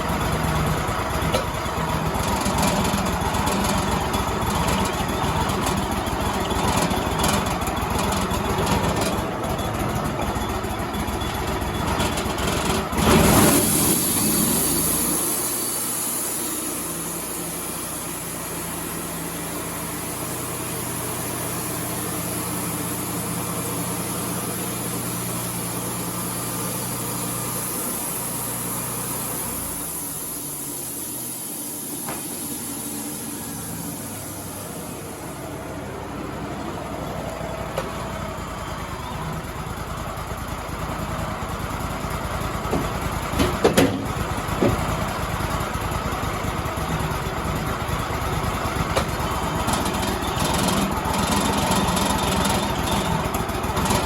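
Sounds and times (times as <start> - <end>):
sawmill engine running: 0.0 - 54.0
high saw hiss: 13.2 - 35.9
loud machine clunks: 42.6 - 45.0.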